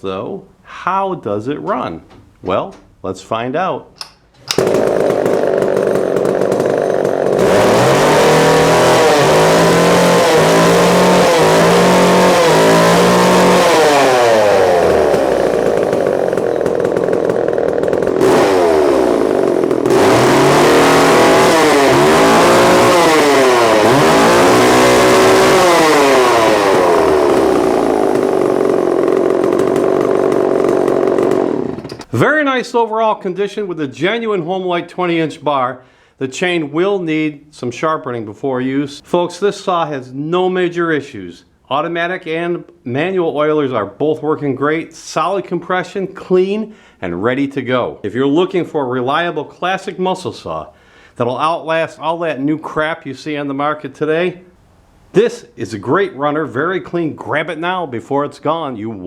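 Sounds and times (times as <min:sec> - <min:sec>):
chainsaw idling and revving: 0:04.5 - 0:32.1.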